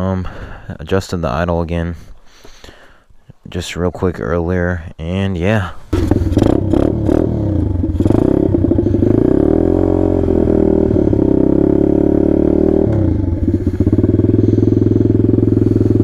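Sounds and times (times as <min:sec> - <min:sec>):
motorbike engine revving and idling: 0:05.9 - 0:16.0.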